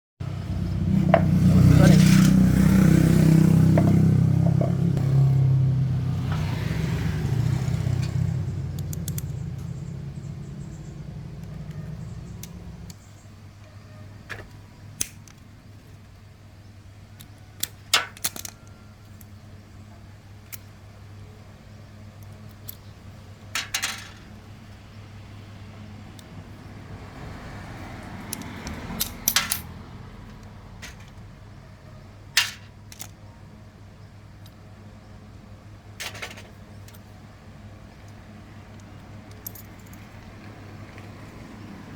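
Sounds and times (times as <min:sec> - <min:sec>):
low mechanical hum: 0:00.2 - 0:41.9
metal parts and tools clinking: 0:23.5 - 0:24.4, 0:28.3 - 0:31.2, 0:32.4 - 0:33.2, 0:36.0 - 0:37.1, 0:38.7 - 0:40.3.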